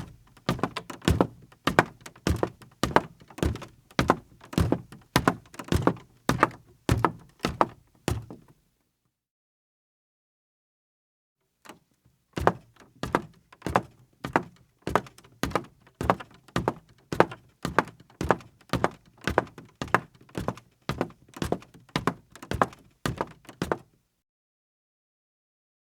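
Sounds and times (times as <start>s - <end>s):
high-heeled footsteps on creaky floor: 0.0s - 8.4s, 12.4s - 23.8s.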